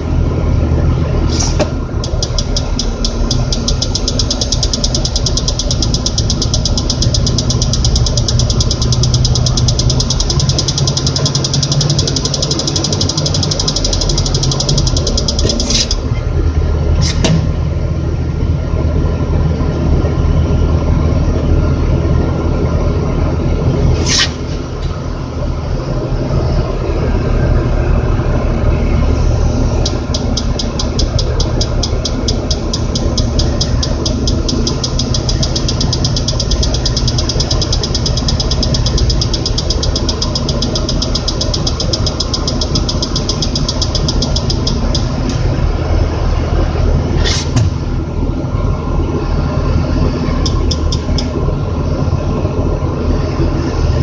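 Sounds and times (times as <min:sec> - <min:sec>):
crane engine running: 0:00.0 - 0:54.0
sharp click: 0:01.4 - 0:16.0, 0:29.8 - 0:45.4, 0:50.4 - 0:51.3
rapid even ticking: 0:02.0 - 0:16.0, 0:29.8 - 0:45.4, 0:50.4 - 0:51.3.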